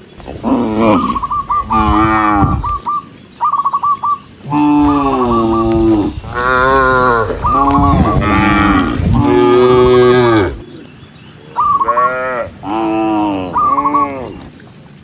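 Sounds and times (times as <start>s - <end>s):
cows mooing: 0.0s - 2.8s, 4.4s - 10.7s, 11.8s - 14.4s.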